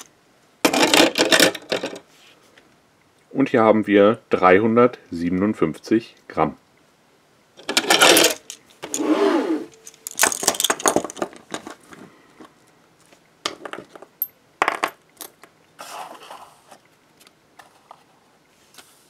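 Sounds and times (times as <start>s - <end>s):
handcuffs clinking and rattling: 7.7s - 9.0s, 9.7s - 11.7s.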